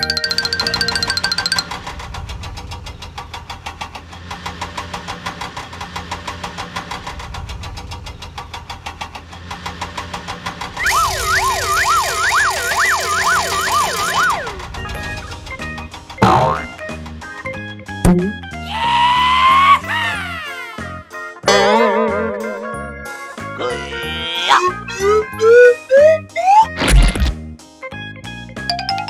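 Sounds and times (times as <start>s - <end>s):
cartoon engine chugging: 0.0s - 2.0s, 10.8s - 16.9s, 18.1s - 27.1s
warbling siren-like wail: 10.8s - 15.4s, 24.4s - 26.7s.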